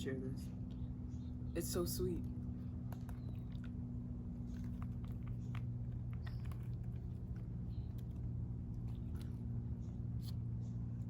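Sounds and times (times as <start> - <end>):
steady low hum: 0.0 - 11.0
person chewing fruit: 2.8 - 10.6.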